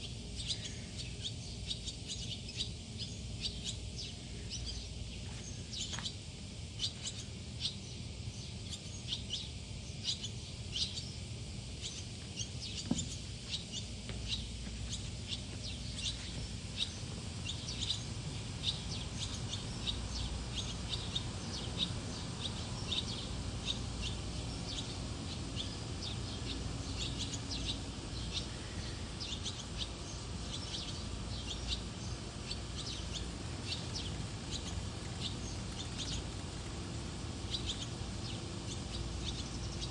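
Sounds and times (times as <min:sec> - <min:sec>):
swallows chirping: 0:00.3 - 0:39.9
low steady rumble: 0:12.6 - 0:39.9.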